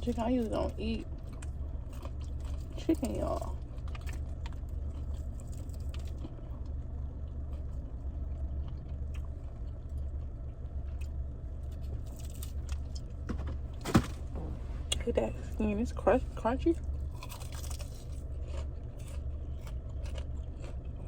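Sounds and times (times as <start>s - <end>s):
low hum: 0.0s - 21.0s
person chewing crispy chicken: 1.0s - 13.2s, 16.8s - 21.0s.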